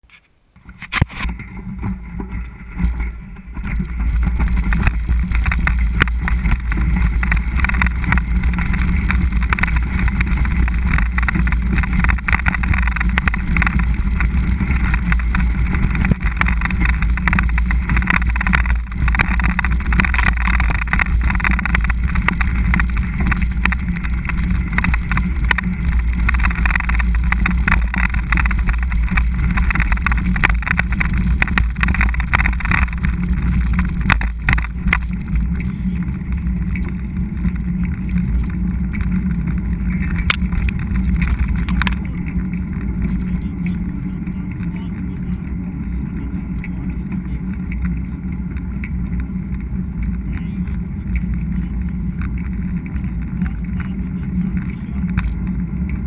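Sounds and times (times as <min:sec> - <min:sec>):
bike rumbling and rattling: 0:00.0 - 0:56.0
wind buffeting microphone: 0:00.6 - 0:56.0.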